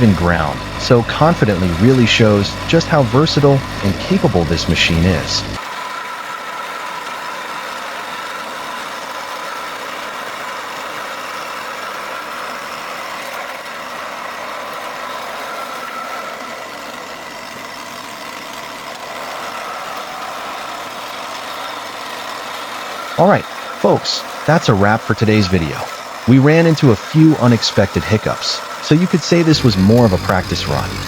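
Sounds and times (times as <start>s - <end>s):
faint steady whine: 0.0s - 5.6s, 22.3s - 31.0s
skid steer loader engine drone: 0.0s - 31.0s.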